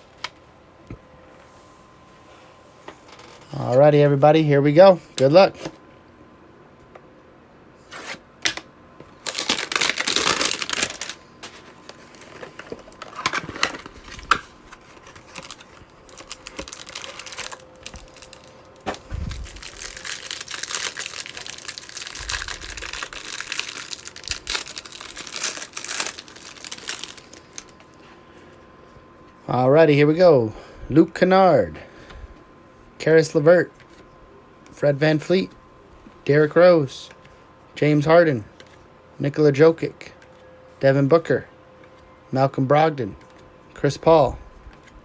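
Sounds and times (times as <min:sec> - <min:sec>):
plastic wrapping crinkling and tearing: 0:08.0 - 0:27.8.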